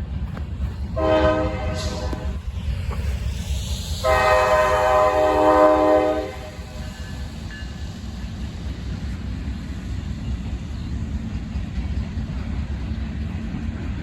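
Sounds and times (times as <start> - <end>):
train rumbling: 0.0 - 14.0
locomotive horn blast: 1.0 - 2.4, 4.0 - 6.8.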